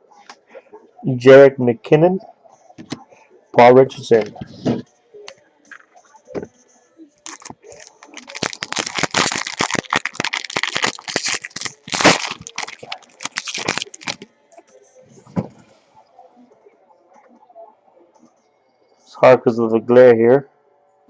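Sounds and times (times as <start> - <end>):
foil wrapper crinkling: 7.2 - 14.3.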